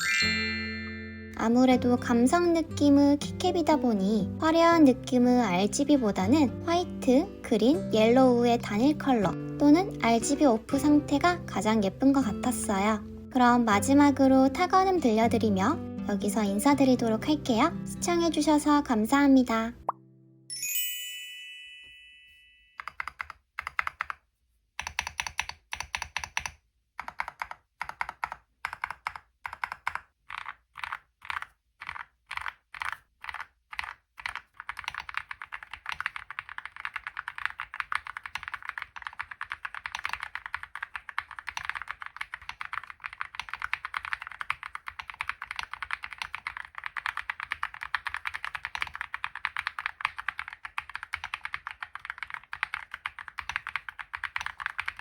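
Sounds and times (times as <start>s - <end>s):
typing on mechanical keyboard: 22.8s - 24.2s, 24.8s - 55.0s.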